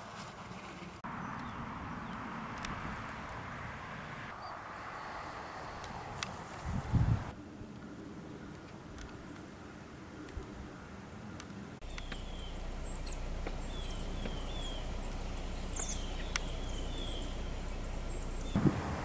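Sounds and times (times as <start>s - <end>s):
outdoor background noise: 0.0s - 19.0s
birds chirping: 1.1s - 3.4s, 11.8s - 18.8s
sharp clicks: 11.4s - 12.3s.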